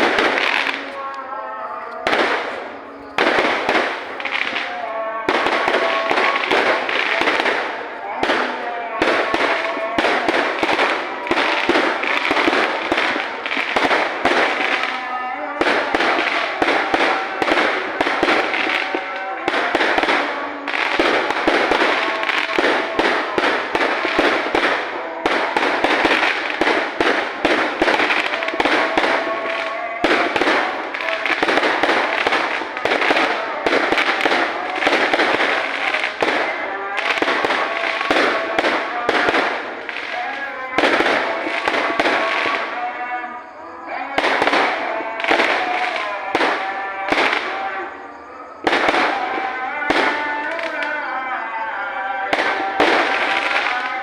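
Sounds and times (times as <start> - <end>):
fireworks bangs and crackles: 0.0 - 54.0.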